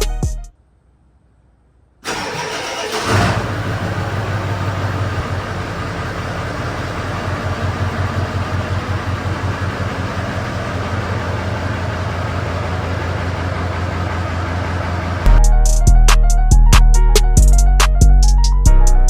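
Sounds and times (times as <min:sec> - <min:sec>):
vehicle engine idling: 0:02.0 - 0:19.0.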